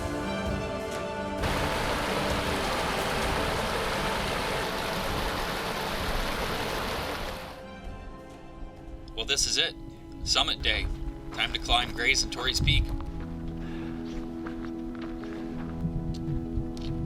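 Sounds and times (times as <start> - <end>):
background music: 0.0 - 17.0
heavy rain hissing: 1.4 - 7.6.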